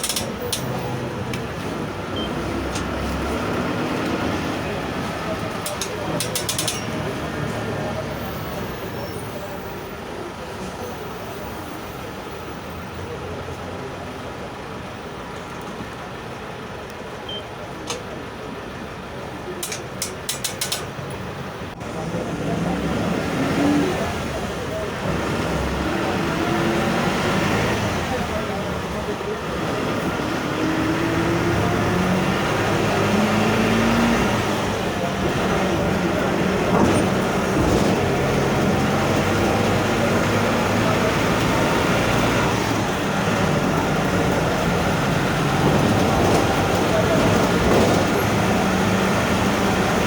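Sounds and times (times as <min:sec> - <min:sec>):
diesel bus engine growling: 0:00.0 - 0:50.0.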